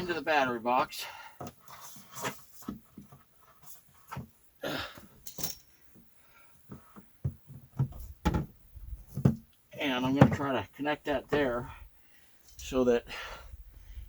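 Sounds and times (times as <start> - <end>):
handling knocks and scrapes: 1.4 - 4.4, 6.7 - 11.8.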